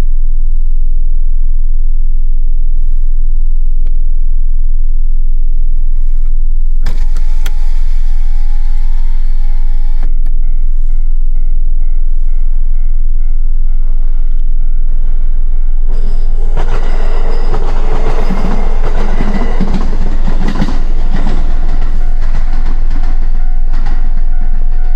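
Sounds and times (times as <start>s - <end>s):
steady low rumble: 0.0s - 24.9s
crossing warning signal tone: 6.8s - 24.9s
train passing: 10.4s - 24.9s.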